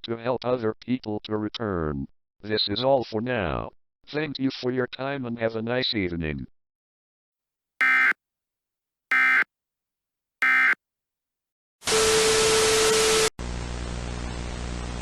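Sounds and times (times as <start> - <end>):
buzzy data burst warbles: 9.1 - 9.4, 10.4 - 10.8
loud static with steady tone: 10.4 - 10.8.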